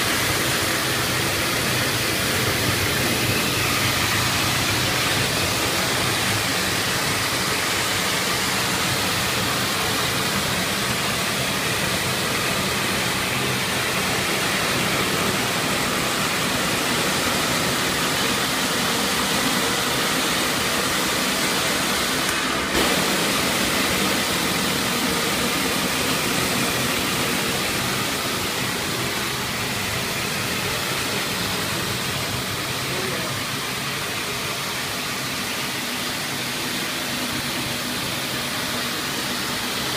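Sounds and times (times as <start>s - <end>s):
cleaning machine rushing hiss: 0.0s - 39.9s.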